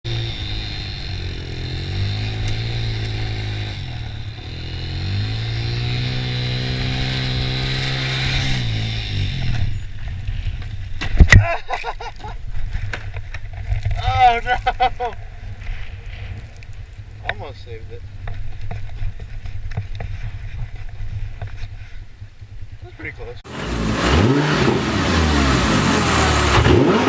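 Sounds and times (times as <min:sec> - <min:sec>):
quad engine revving: 0:00.1 - 0:09.8, 0:23.5 - 0:27.0.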